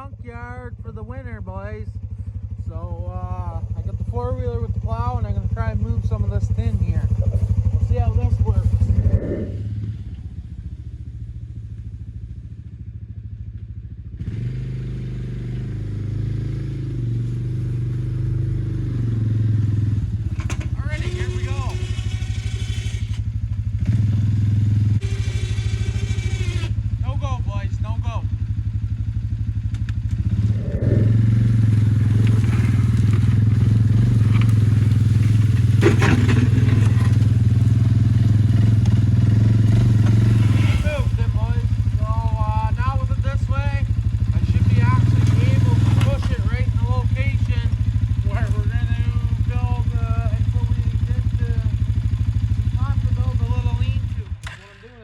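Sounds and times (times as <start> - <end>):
atv engine idling and revving: 0.0 - 55.0
scraping and clattering metal: 31.6 - 37.4.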